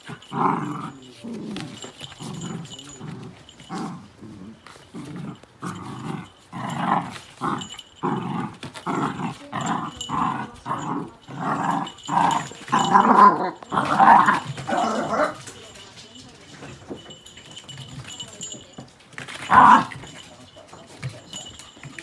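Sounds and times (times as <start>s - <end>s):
dog growling and barking: 0.0s - 15.5s, 19.2s - 20.3s.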